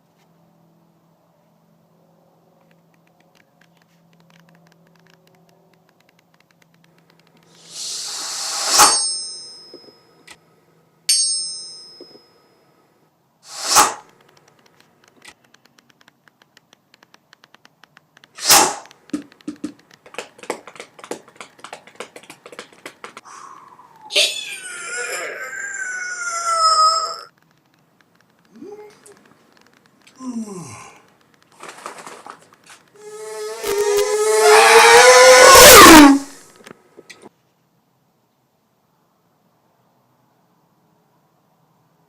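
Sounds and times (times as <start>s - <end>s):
rapid uneven ticks and taps: 2.6s - 7.5s, 14.0s - 23.3s, 27.3s - 30.2s, 31.0s - 31.6s
swelling hiss: 7.5s - 8.9s, 13.4s - 14.1s
ringing ding: 8.8s - 10.2s, 11.1s - 12.5s
sharp hit: 13.5s - 14.1s, 18.4s - 18.9s.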